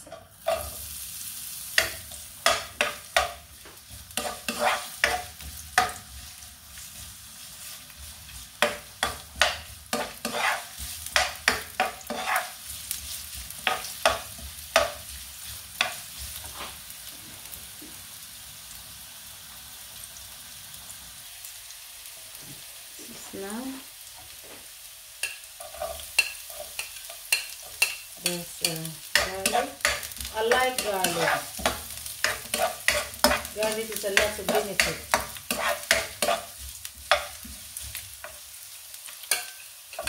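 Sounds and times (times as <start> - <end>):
ginger sizzling in pan: 0.0 - 40.0
utensil scraping against pan: 4.2 - 5.3, 9.0 - 13.9, 25.2 - 38.4.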